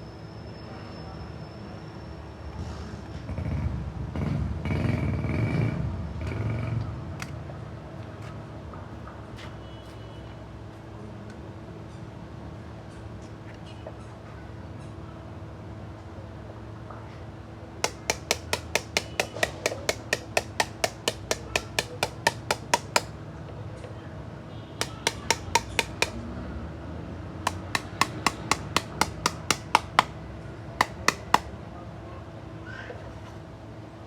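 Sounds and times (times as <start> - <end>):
hammer striking hard object: 17.8 - 23.1, 24.8 - 26.2, 27.5 - 30.2, 30.8 - 31.5.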